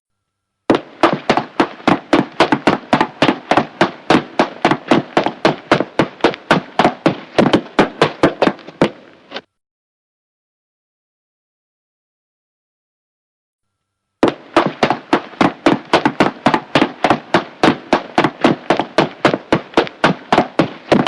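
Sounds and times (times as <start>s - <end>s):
horse hooves trotting on hard floor: 0.7s - 9.0s, 14.2s - 21.0s.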